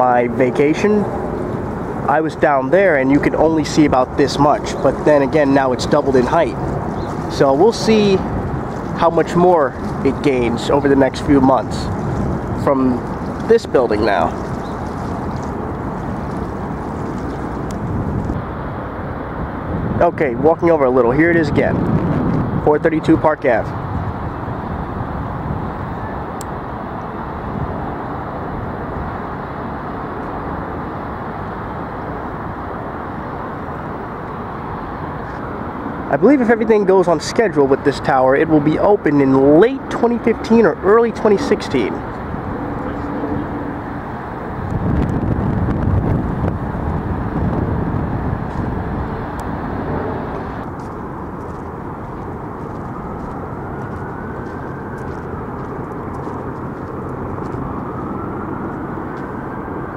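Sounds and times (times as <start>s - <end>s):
distant city traffic hum: 0.0s - 59.9s
distant engines rumbling: 0.0s - 59.9s
faint rising whine: 40.8s - 59.9s.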